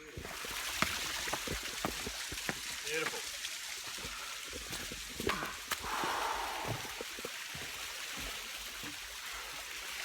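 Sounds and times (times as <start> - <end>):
waterfall rushing: 5.3 - 7.7.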